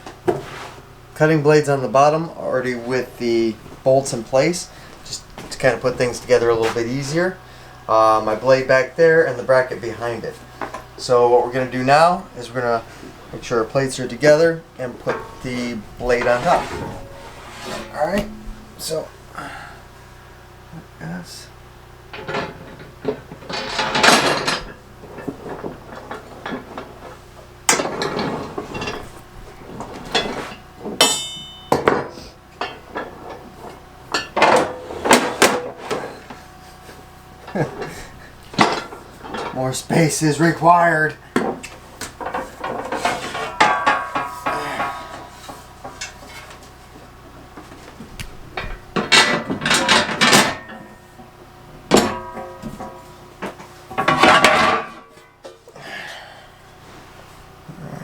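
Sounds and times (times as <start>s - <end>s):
metal parts clanking together: 15.0s - 19.1s, 22.1s - 26.9s, 42.2s - 46.4s, 48.6s - 51.1s, 51.9s - 55.1s
metallic ring: 15.1s - 19.9s, 31.0s - 32.0s, 43.0s - 46.4s, 51.9s - 53.2s.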